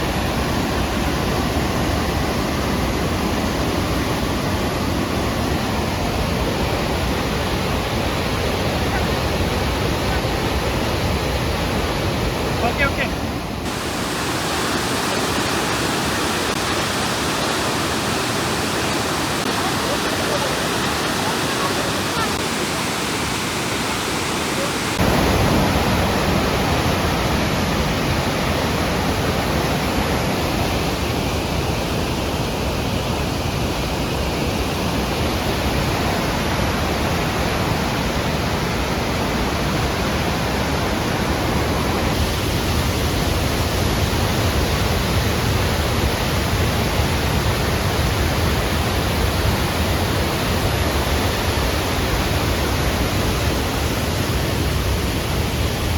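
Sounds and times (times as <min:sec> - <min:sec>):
waterfall roaring: 0:00.0 - 0:55.9.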